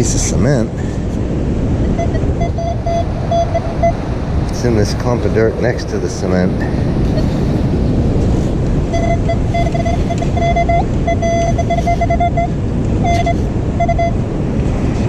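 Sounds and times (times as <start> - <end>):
wind rumble on microphone: 0.0 - 15.0
pin-pointer beeping: 2.0 - 4.0, 8.9 - 14.2.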